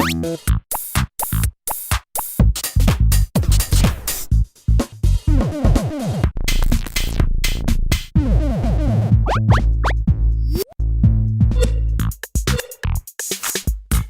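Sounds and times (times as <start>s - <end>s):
glitchy electronic music: 5.4s - 7.6s, 8.2s - 10.0s.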